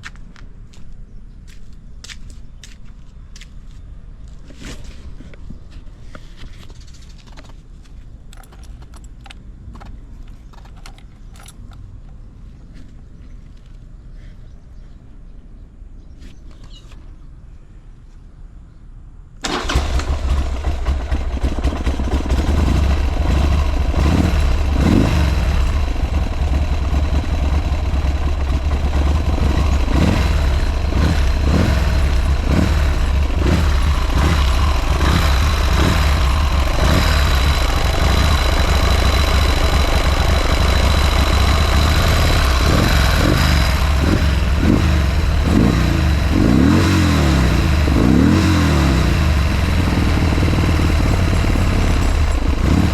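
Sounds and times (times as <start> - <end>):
motorcycle engine starting and idling: 6.3 - 12.3, 19.4 - 52.9.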